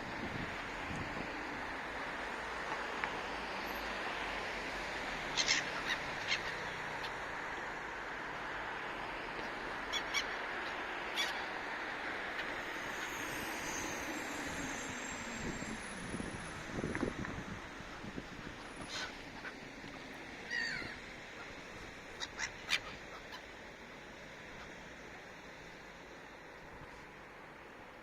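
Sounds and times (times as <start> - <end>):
steady background rush: 0.0 - 28.0
seagulls calling: 5.3 - 7.2, 9.8 - 11.6, 18.4 - 23.6.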